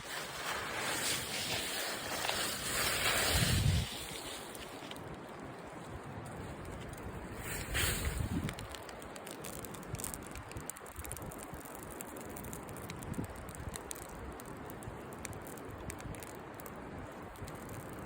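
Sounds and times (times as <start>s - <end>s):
fire low rush: 0.0s - 5.8s, 6.4s - 8.9s
campfire crackling and popping: 0.0s - 18.0s.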